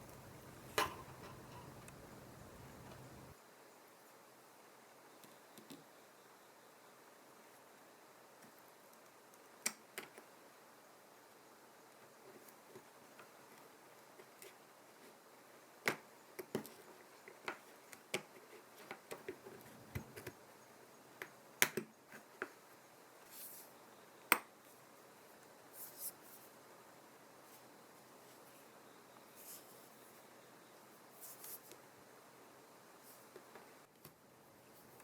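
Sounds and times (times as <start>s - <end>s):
small tools clicking and tapping: 0.0s - 3.3s.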